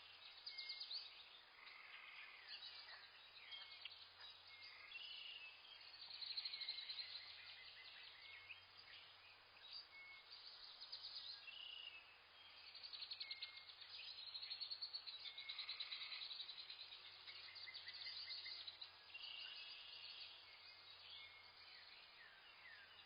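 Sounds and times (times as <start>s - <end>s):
wild birds chirping: 0.0s - 23.0s.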